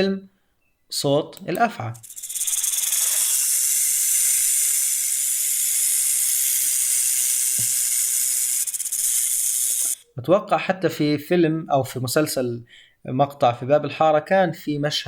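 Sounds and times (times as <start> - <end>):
rattlesnake rattling: 1.9 - 10.0.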